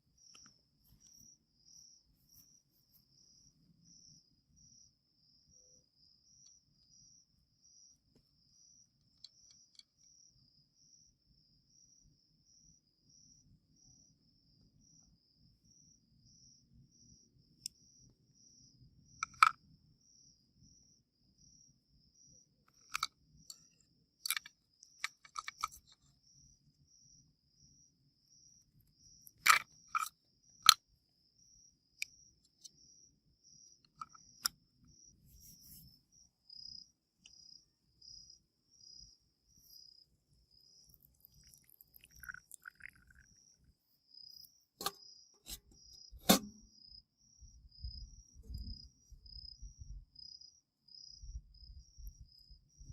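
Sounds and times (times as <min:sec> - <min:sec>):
cricket chirping: 0:00.0 - 0:52.9
sharp clicks and knocks: 0:44.8 - 0:46.7.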